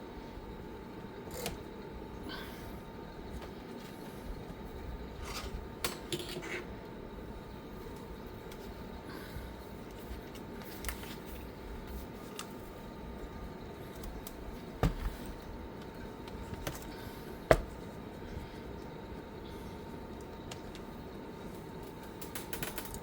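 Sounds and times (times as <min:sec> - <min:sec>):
small clicks and taps of parts: 0:20.2 - 0:20.9.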